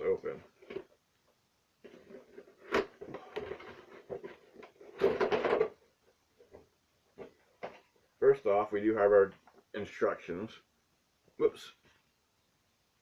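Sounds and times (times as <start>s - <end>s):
cardboard rustling: 1.8s - 5.8s.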